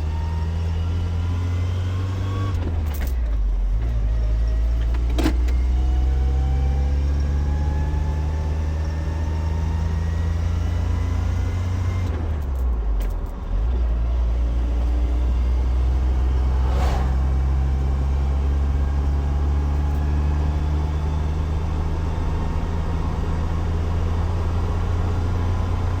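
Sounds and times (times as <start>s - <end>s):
truck engine drone: 5.7s - 26.0s.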